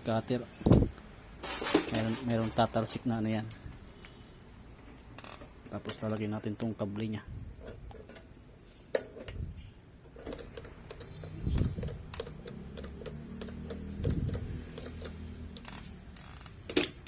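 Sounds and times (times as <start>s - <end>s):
hands clicking and tapping on engine: 10.2s - 17.0s.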